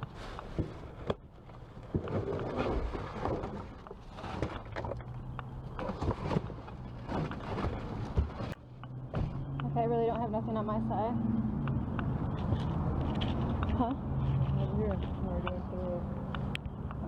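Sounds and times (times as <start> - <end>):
rummaging through a dumpster: 0.0 - 9.5.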